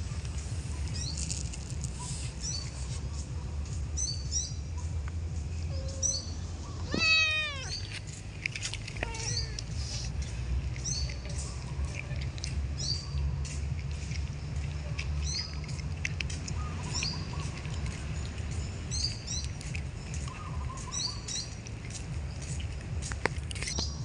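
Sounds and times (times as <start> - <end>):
steady low rumble: 0.0 - 24.0
cat meowing: 6.8 - 7.8, 9.0 - 9.7.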